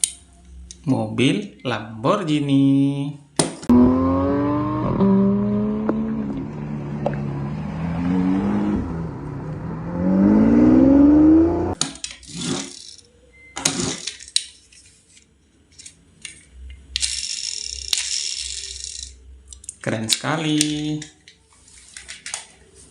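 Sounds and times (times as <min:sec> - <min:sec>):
car engine revving: 0:03.7 - 0:11.8
plastic toy clicks and rattles: 0:17.0 - 0:21.1.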